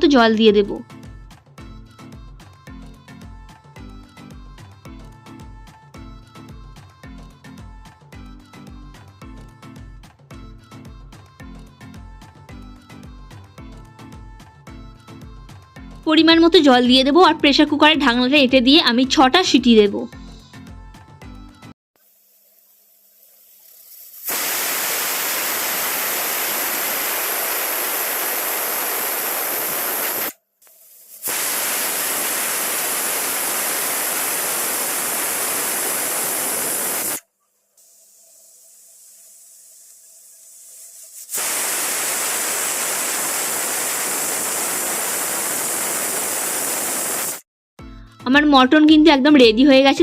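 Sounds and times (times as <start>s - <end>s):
pressure cooker whistling: 24.2s - 30.3s, 31.2s - 37.2s, 41.3s - 47.4s.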